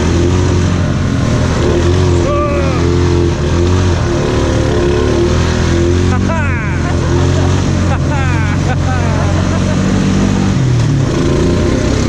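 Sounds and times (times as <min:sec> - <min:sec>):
atv engine running under load: 0:00.0 - 0:12.0
person shouting: 0:02.2 - 0:03.2, 0:06.2 - 0:07.0.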